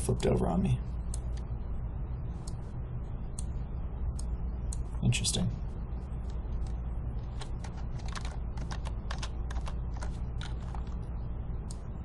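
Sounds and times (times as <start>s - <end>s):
steady low hum: 0.0s - 12.0s
keyboard keystrokes: 7.4s - 11.0s.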